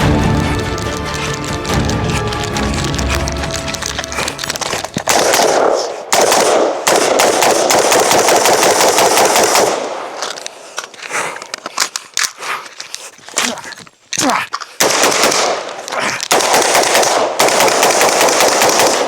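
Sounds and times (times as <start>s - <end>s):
rifle gunfire: 5.1s - 10.1s, 14.8s - 15.7s, 16.3s - 19.0s.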